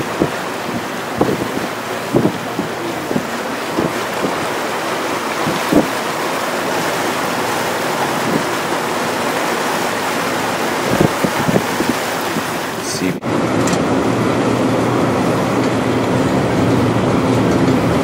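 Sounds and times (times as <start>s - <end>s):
wind buffeting microphone: 0.0s - 12.8s
blizzard wind: 0.0s - 18.0s
storm surf rushing: 0.0s - 18.0s.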